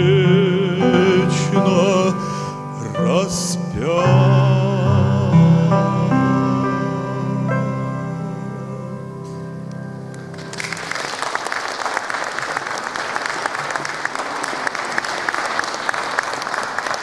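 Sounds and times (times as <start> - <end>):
person singing with piano: 0.0 - 9.9
audience applauding: 10.3 - 17.0.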